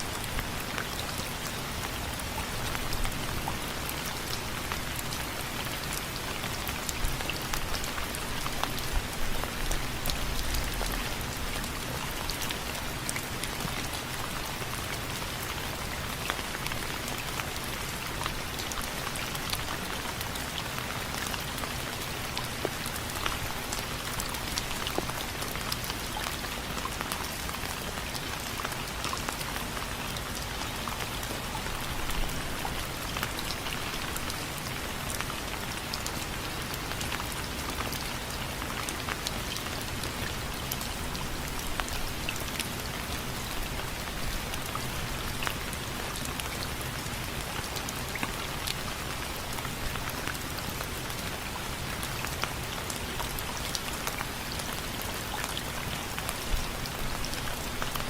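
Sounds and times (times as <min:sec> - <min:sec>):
hiss of rainfall: 0:00.0 - 0:58.0.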